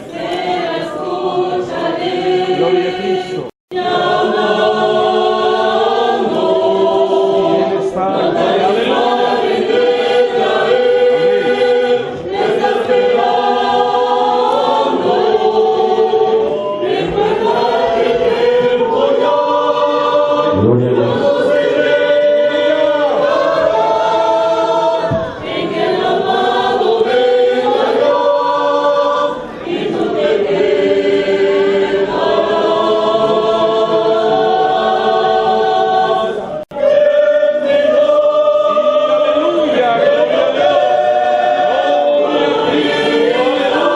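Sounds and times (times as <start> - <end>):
choir singing a hymn: 0.0 - 43.9.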